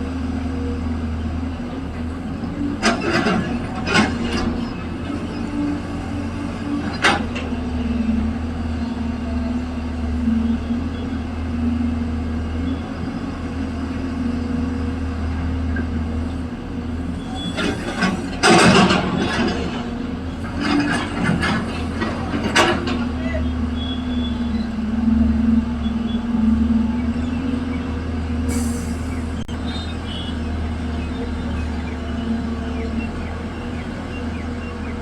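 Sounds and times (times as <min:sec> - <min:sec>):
diesel engine running: 0:00.0 - 0:35.0
metallic clanks and rattles: 0:17.4 - 0:23.2.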